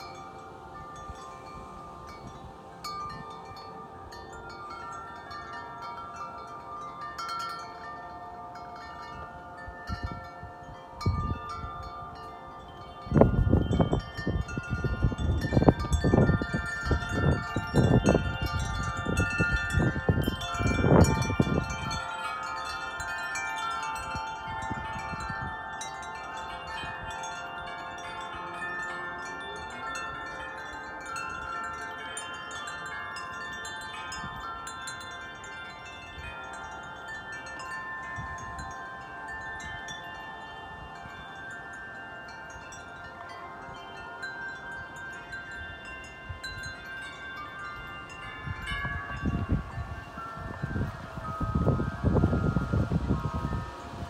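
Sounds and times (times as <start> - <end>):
wind chimes ringing: 0.0 - 54.0
wind rumbling on microphone: 8.6 - 28.2, 43.7 - 54.0.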